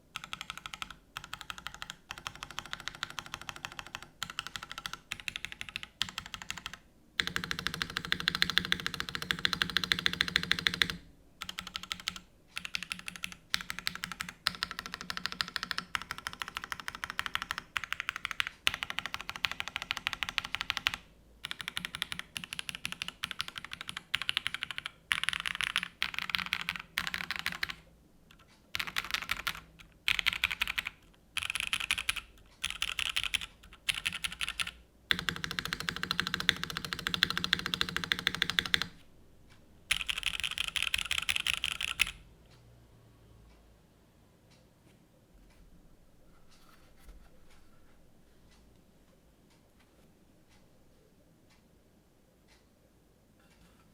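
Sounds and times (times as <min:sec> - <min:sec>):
mechanical keyboard typing: 0:00.1 - 0:39.0, 0:39.9 - 0:42.2.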